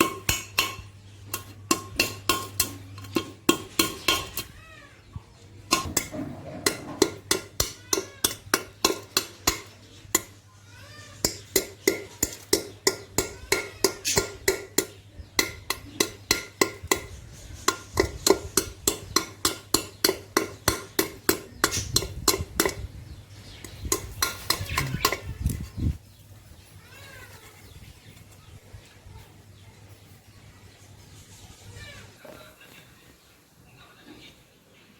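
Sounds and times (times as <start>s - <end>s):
small birds chirping: 0.0s - 34.9s
hammer strikes ringing metal: 11.2s - 22.8s.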